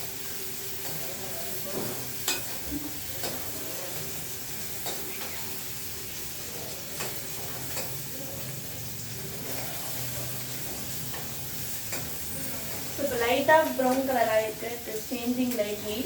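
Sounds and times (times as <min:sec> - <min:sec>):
onions sizzling in hot oil: 0:00.0 - 0:16.0
spoon clicking against pan: 0:07.0 - 0:08.0.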